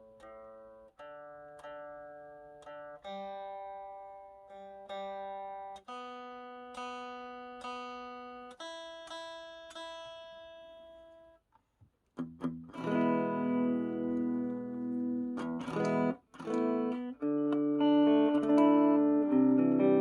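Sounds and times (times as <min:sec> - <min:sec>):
electric guitar single picked notes: 0:12.2 - 0:20.0
electric guitar strummed chords: 0:12.2 - 0:20.0.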